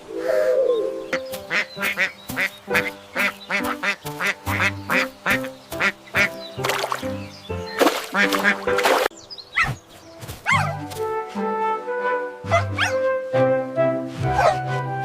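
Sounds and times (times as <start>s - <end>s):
background music: 0.0s - 15.0s
ducks quacking: 1.1s - 9.7s.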